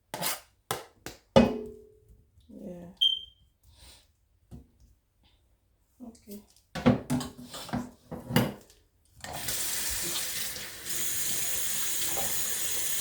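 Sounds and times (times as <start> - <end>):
tap water filling a pot: 9.2 - 13.0.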